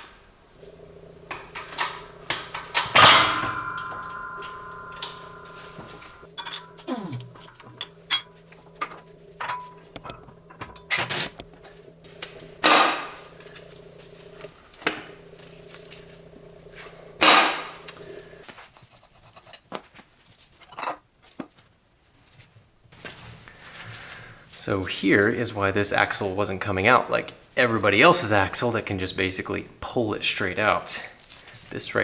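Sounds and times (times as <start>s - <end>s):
loud metal strikes: 2.9s - 7.8s.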